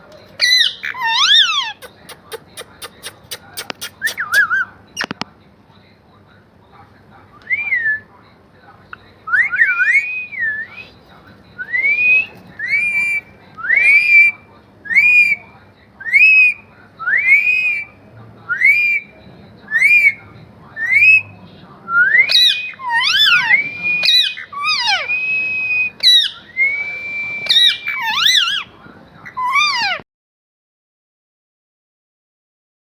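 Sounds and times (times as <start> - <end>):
parrot whistling: 9.3 - 10.9, 11.6 - 15.4, 16.0 - 17.9, 18.5 - 19.1, 19.7 - 20.2, 20.8 - 21.3, 21.9 - 28.7, 29.3 - 30.0.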